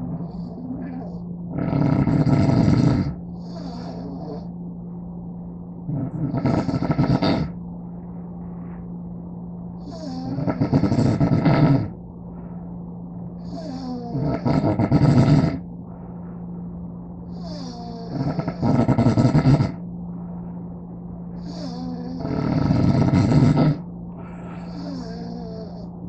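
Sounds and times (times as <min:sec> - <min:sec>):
person snoring: 0:00.0 - 0:04.5, 0:05.9 - 0:07.6, 0:09.8 - 0:11.9, 0:13.4 - 0:15.6, 0:17.3 - 0:19.8, 0:21.4 - 0:25.9
quiet breathing: 0:00.0 - 0:10.6, 0:12.0 - 0:14.4, 0:15.6 - 0:18.6, 0:19.8 - 0:26.0
steady low hum: 0:00.0 - 0:26.0.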